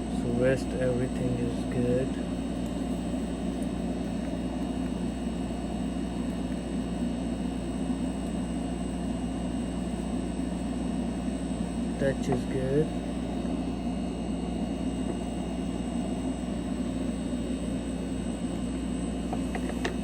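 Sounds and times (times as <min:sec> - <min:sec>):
motor humming: 0:00.0 - 0:20.0.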